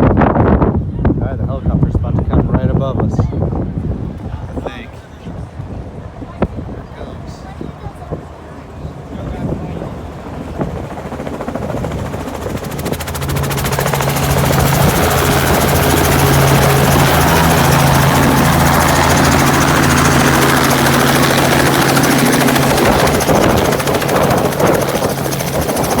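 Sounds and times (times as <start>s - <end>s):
helicopter flying overhead: 0.2s - 26.0s
low drone: 12.8s - 25.3s.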